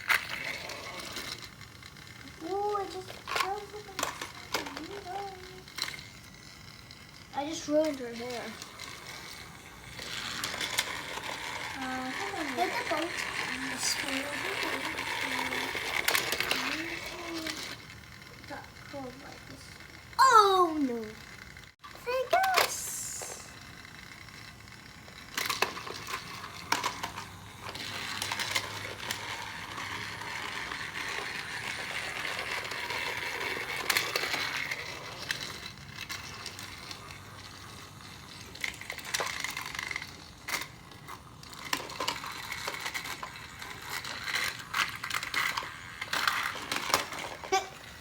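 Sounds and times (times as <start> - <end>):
plastic toy pieces clicking: 7.7 - 17.9, 25.1 - 48.0.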